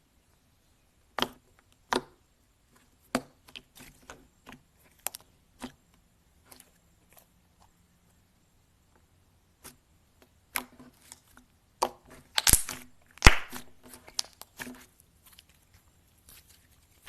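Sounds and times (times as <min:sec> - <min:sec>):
slime squishing with sticky pops: 0:09.6 - 0:15.7.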